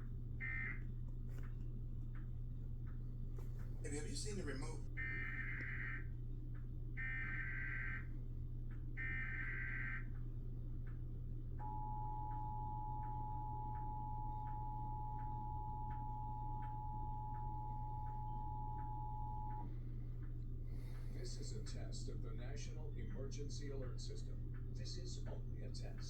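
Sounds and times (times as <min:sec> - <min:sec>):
two-tone attention signal: 0:11.6 - 0:19.6.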